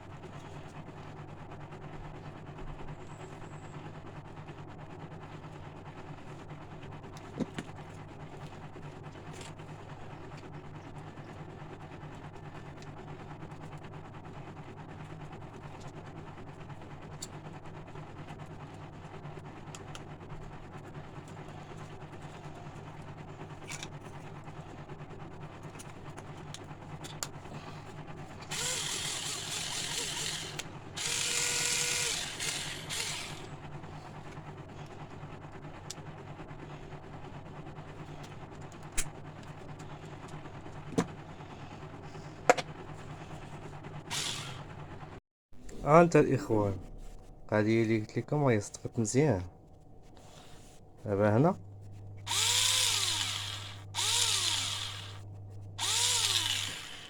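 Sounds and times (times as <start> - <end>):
steady low hum: 5.4 - 57.0
cordless drill running: 28.4 - 33.6, 44.1 - 44.9, 52.3 - 55.2, 55.8 - 57.0.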